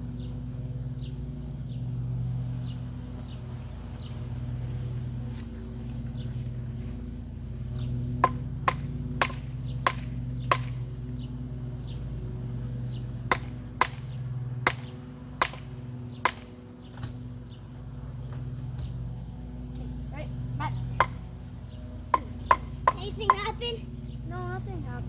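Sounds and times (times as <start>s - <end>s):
low hum: 0.0s - 25.0s
tool striking wood: 8.2s - 10.8s, 13.3s - 14.1s, 14.7s - 17.1s, 21.0s - 21.2s, 22.1s - 23.5s.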